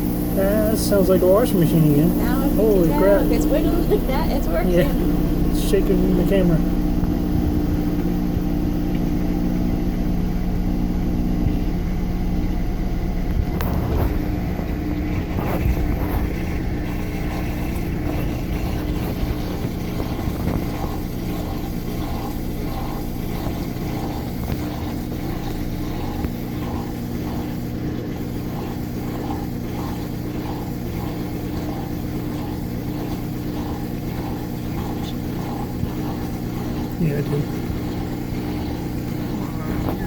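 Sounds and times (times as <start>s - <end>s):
washing machine drum spinning: 0.0s - 40.0s.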